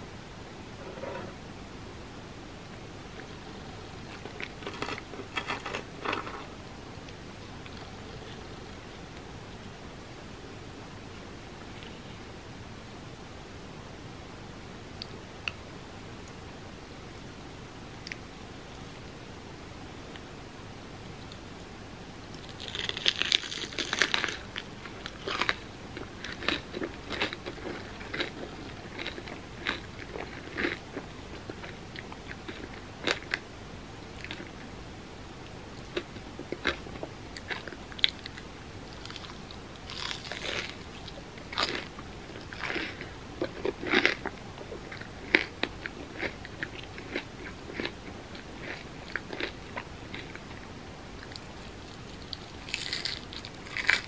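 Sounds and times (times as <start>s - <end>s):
crunchy chewing of fried bread: 3.2s - 6.6s, 22.3s - 33.5s, 34.1s - 34.7s, 35.8s - 54.0s.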